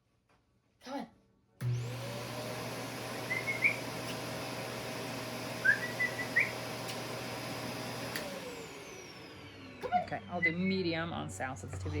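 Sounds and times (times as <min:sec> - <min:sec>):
vacuum cleaner motor whirring: 0:01.6 - 0:11.1.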